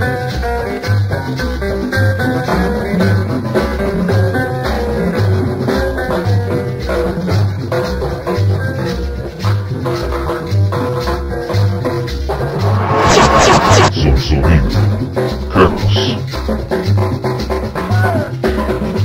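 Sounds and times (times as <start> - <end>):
dance music with bass beat: 12.6 - 15.0.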